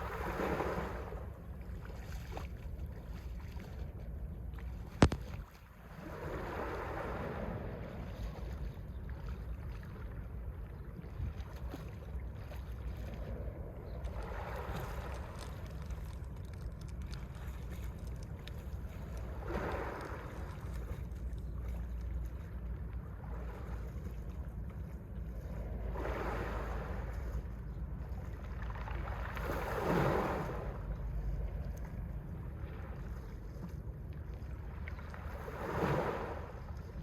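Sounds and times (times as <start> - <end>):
sea waves washing onto shore: 0.0 - 1.3, 5.0 - 8.4, 13.2 - 21.0, 28.5 - 32.1, 35.1 - 36.8
low rumble of the sea: 0.0 - 37.0.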